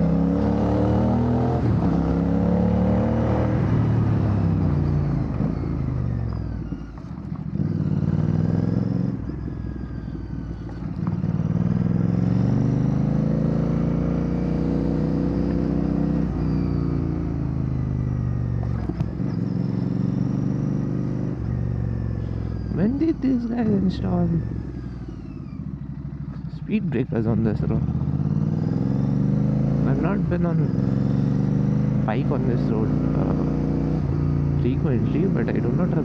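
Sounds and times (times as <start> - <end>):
motorcycle engine revving: 0.0 - 36.0.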